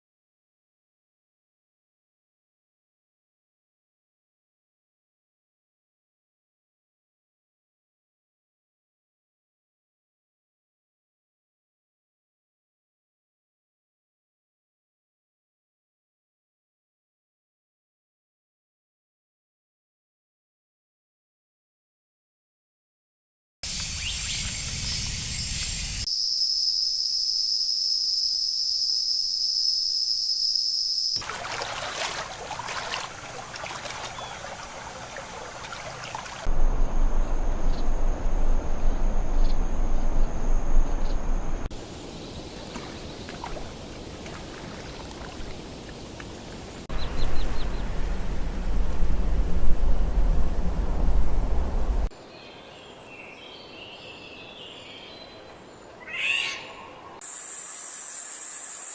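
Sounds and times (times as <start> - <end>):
high-pitched insect drone: 23.9 - 31.2, 57.2 - 58.9
water rushing and trickling: 31.2 - 36.6, 41.7 - 52.1
heavy low rumble: 36.5 - 41.7, 46.9 - 52.1.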